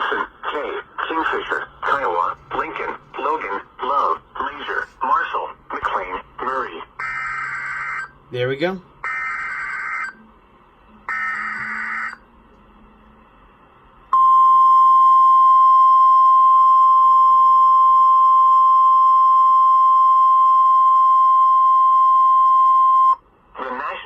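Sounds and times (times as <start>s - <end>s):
steady alarm tone beep: 7.0s - 8.2s, 11.1s - 12.2s, 14.1s - 23.2s.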